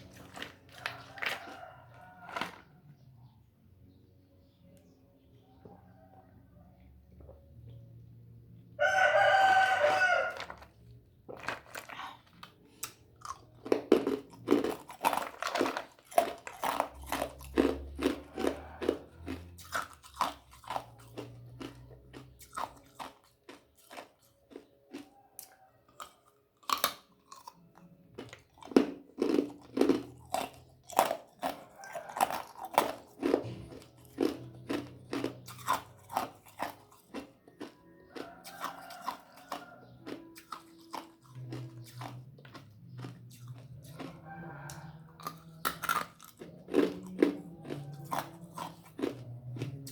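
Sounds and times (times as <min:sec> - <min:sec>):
ice crunched between teeth: 0:00.0 - 0:02.7, 0:09.2 - 0:27.6, 0:28.2 - 0:44.1
rooster crowing: 0:00.7 - 0:02.6, 0:08.8 - 0:10.6, 0:18.0 - 0:19.4, 0:31.6 - 0:33.4, 0:38.1 - 0:40.0, 0:43.8 - 0:45.6, 0:47.1 - 0:48.5.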